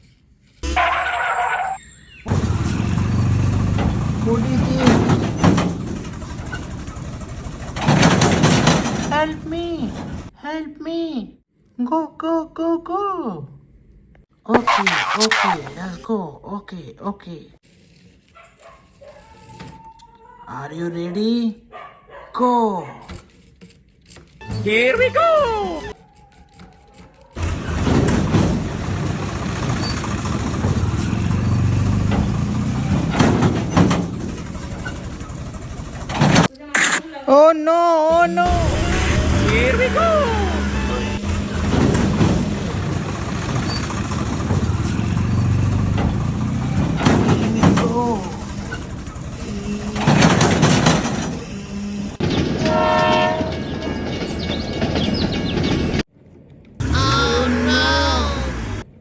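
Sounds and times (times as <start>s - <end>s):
rumbling mechanical noise: 2.2s - 10.4s, 27.4s - 37.0s, 37.9s - 56.1s, 56.8s - 59.0s
vehicle engine running: 2.3s - 10.3s, 27.4s - 36.5s, 38.1s - 52.2s
horn blasts: 38.4s - 42.8s, 52.6s - 54.0s.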